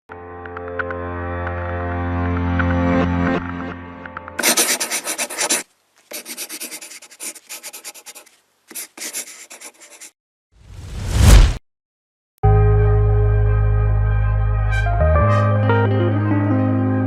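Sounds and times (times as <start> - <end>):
scratchy rubbing and rasping: 4.4 - 10.2.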